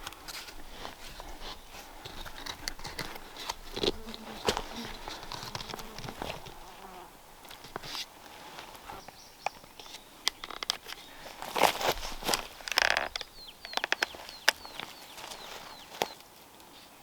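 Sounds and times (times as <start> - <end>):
insect buzzing: 3.7 - 7.2.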